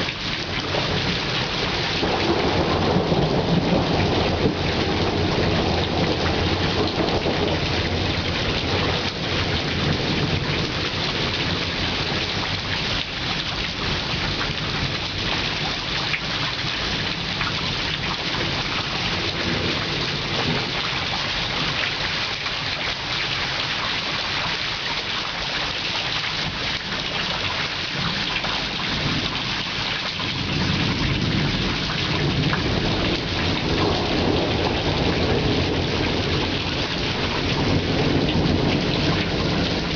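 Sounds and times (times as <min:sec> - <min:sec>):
thunder rumble: 0:00.0 - 0:12.8, 0:30.2 - 0:39.9
heavy rain falling: 0:00.0 - 0:39.9.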